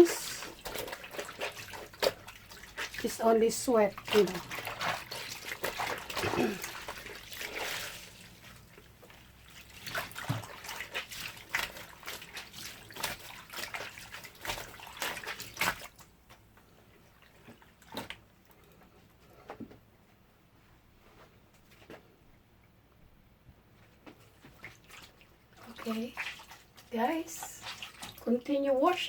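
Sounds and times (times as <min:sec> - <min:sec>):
water splashing and sloshing: 0:00.0 - 0:19.5, 0:23.8 - 0:29.0.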